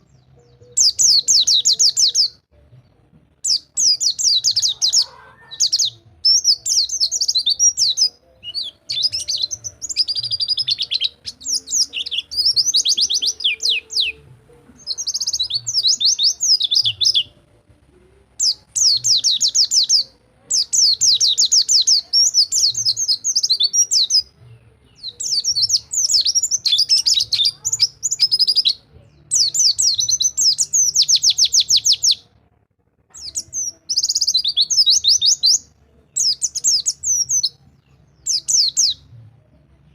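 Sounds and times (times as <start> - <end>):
bird high-pitched trills: 3.5 - 17.4.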